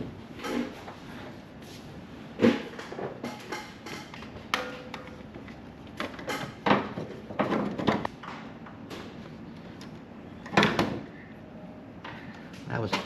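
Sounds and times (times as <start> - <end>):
tools knocking and clattering: 2.4 - 9.0.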